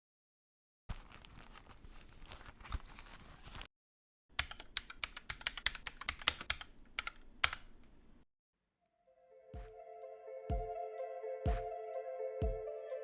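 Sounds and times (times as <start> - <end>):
mechanical keyboard typing: 4.4 - 7.7.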